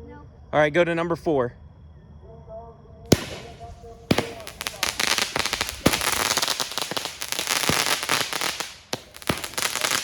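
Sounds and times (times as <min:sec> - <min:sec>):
loud firework bangs: 0:03.1 - 0:10.0
rattle of firework cracks: 0:03.1 - 0:10.0.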